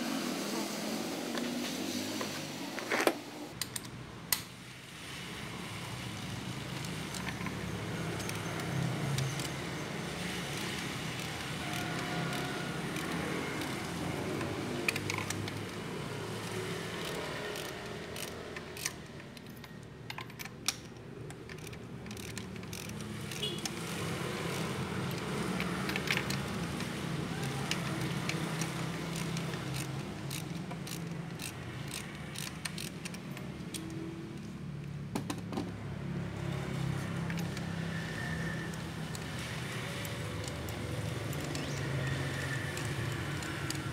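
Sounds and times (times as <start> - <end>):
metallic tool clicks and clinks: 16.5 - 23.1, 38.6 - 43.9.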